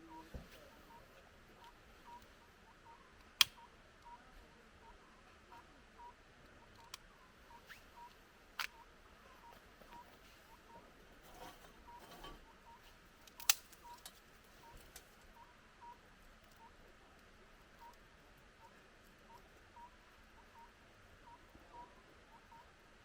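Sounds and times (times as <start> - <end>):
faint high peep: 0.0 - 12.9
firewood crackling pops: 13.2 - 14.1.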